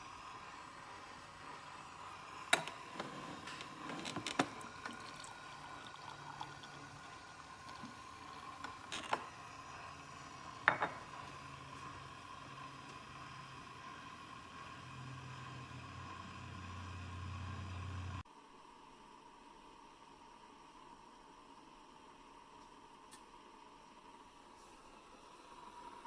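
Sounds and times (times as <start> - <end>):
coffee maker gurgling: 0.0 - 18.2, 24.9 - 26.0
faint steady hum: 0.0 - 26.0.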